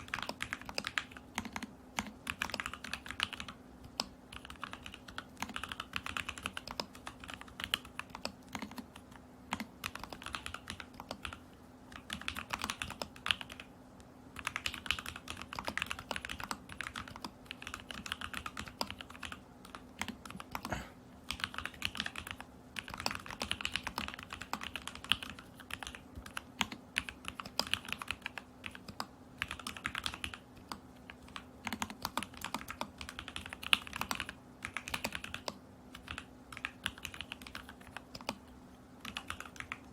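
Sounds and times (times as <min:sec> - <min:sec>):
typing on mechanical keyboard: 0:00.0 - 0:13.7, 0:14.3 - 0:39.9.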